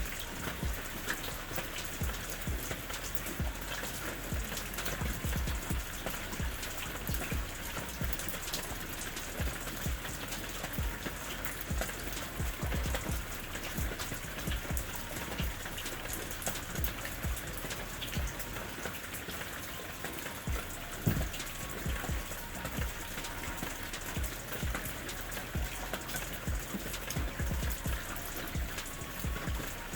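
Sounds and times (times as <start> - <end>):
raindrops pattering on a surface: 0.0 - 29.9
steady rain falling: 0.0 - 29.9.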